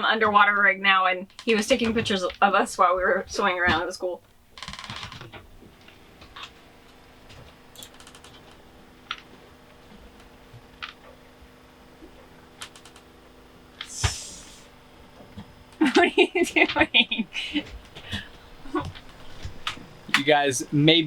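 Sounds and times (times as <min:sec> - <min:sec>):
faint steady hum: 0:00.0 - 0:21.0
laptop keyboard clicks: 0:07.8 - 0:08.5, 0:12.6 - 0:13.0
brief hiss: 0:13.8 - 0:14.7.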